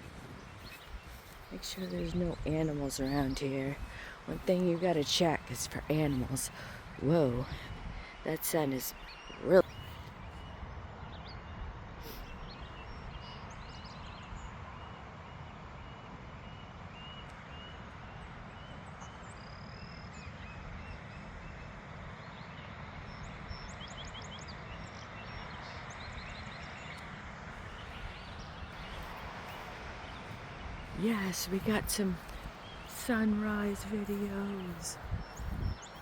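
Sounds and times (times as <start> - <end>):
small birds chirping: 0.0 - 10.6, 23.1 - 36.0.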